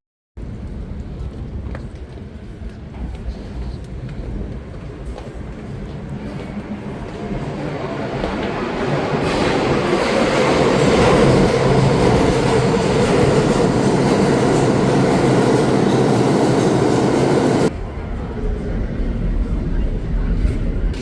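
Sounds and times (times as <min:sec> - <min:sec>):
subway train rumbling: 0:00.4 - 0:21.0.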